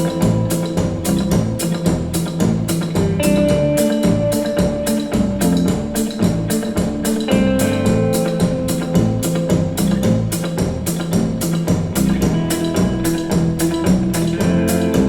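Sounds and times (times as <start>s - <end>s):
music with steady drum beat: 0.0s - 15.0s.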